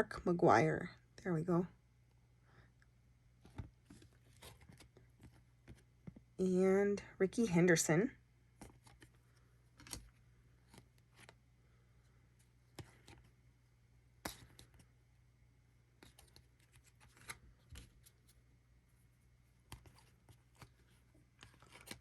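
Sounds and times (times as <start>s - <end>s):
trading cards being handled: 3.4s - 6.2s, 8.6s - 11.4s, 12.3s - 13.4s, 14.2s - 15.0s, 15.9s - 18.4s, 19.5s - 22.0s.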